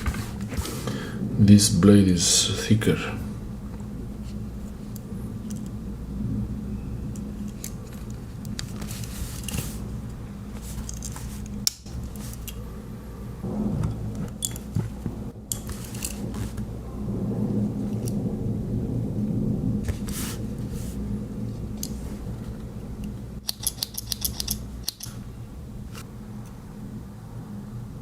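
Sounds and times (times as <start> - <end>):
small metal clicks of knife tools: 23.5 - 25.2.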